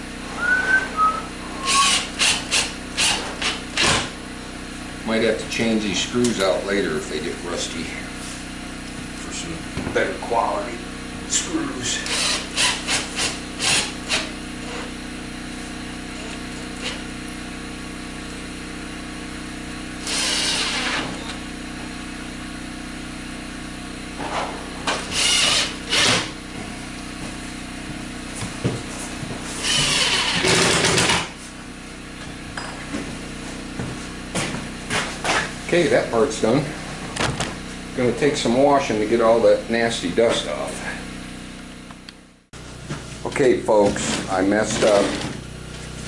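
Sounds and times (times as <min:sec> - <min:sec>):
power drill driving screws: 0:01.7 - 0:04.1, 0:12.0 - 0:14.8, 0:20.0 - 0:21.4, 0:24.9 - 0:26.4, 0:29.6 - 0:31.3.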